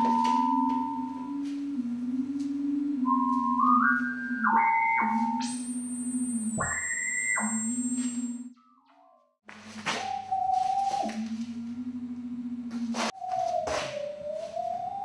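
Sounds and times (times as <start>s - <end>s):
electronic tones stepping upward: 0.0s - 8.5s
low electronic hum: 0.0s - 8.6s, 9.5s - 13.5s
very high thin tone: 0.0s - 8.6s.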